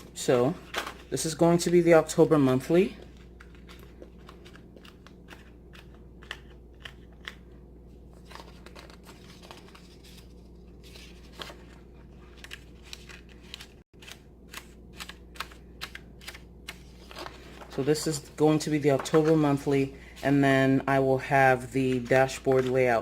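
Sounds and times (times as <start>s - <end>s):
steady low hum: 0.0s - 23.0s
paper rustling: 0.6s - 7.5s, 8.1s - 20.3s, 21.5s - 23.0s
planner discs clicking and snapping: 3.4s - 7.5s, 12.4s - 17.3s.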